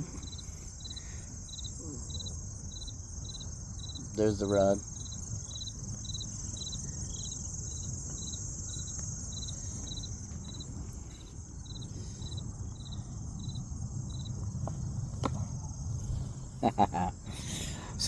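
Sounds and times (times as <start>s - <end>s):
crickets chirping: 0.0s - 18.0s
insects trilling: 0.0s - 18.0s
low steady rumble: 0.0s - 18.0s.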